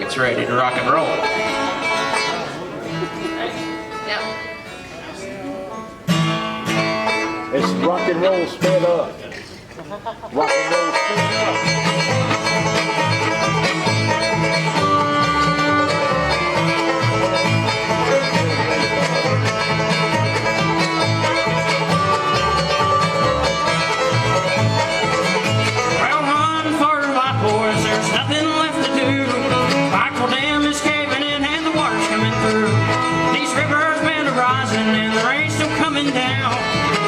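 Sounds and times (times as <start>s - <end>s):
banjo: 0.0s - 4.8s, 5.5s - 37.0s
guitar: 0.0s - 37.0s
fiddle with sliding notes: 10.4s - 37.0s.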